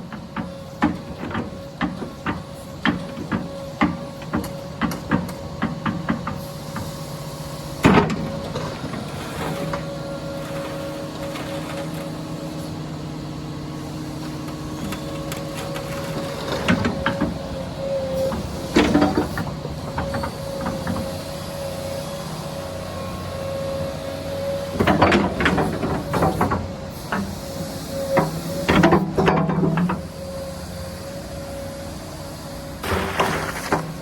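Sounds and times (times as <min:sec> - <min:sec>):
excavator engine running: 0:00.0 - 0:34.0.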